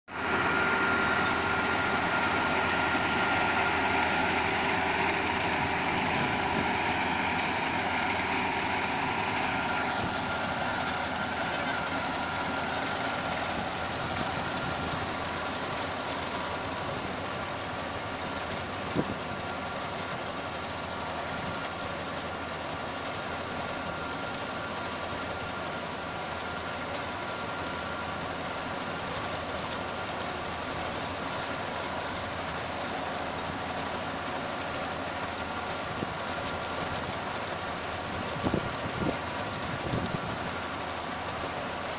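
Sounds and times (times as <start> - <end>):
combine harvester running: 0.0 - 41.9.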